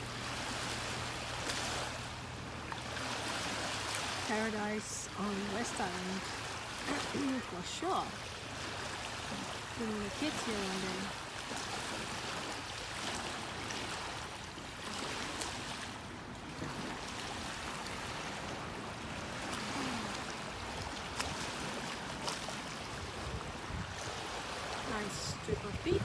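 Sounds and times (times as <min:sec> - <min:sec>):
surf hissing on beach: 0:03.0 - 0:12.7, 0:18.4 - 0:26.0.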